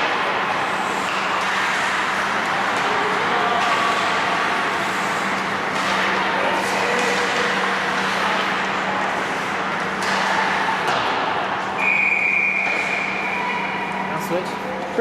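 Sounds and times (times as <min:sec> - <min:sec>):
skates scraping on ice: 0:00.0 - 0:11.0
referee's whistle: 0:11.8 - 0:13.8.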